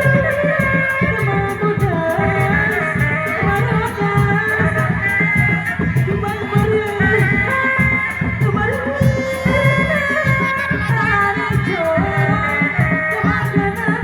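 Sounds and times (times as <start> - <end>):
held instrument tones: 0.0 - 14.0
person singing: 0.0 - 14.0
quick steady drum beat: 0.0 - 14.0.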